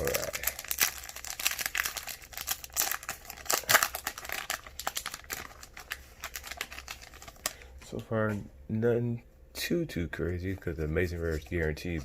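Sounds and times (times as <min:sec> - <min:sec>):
foil wrapper crinkling: 0:00.0 - 0:07.7
cards being handled: 0:10.5 - 0:12.0.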